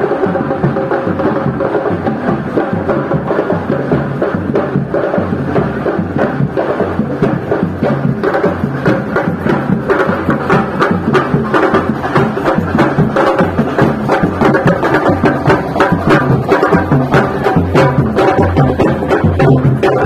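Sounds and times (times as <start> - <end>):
music with sharp percussion hits: 0.1 - 20.0.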